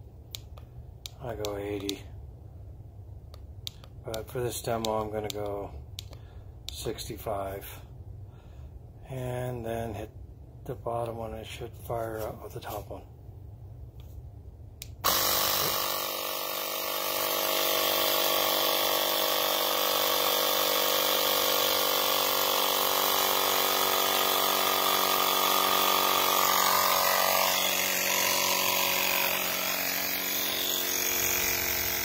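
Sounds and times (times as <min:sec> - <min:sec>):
electric tire compressor running: 0:15.0 - 0:32.0.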